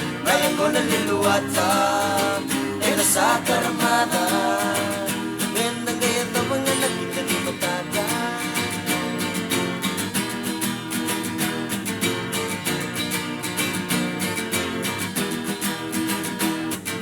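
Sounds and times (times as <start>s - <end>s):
acoustic guitar strumming: 0.0s - 17.0s.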